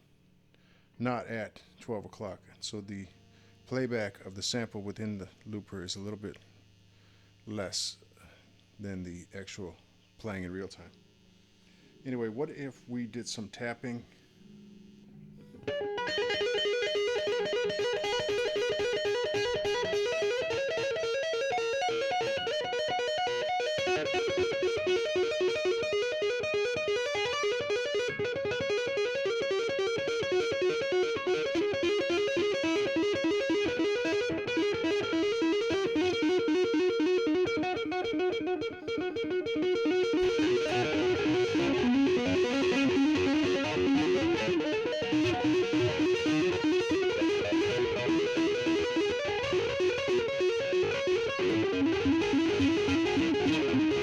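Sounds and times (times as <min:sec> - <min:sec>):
electric guitar tapping run: 0:15.4 - 0:54.0.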